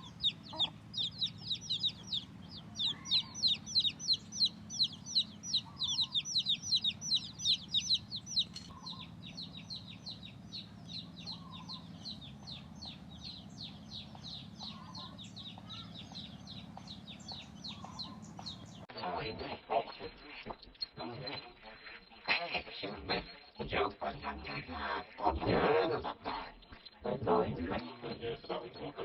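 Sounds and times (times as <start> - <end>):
chicks peeping: 0.0 - 22.1
faint low clucks: 0.0 - 29.0.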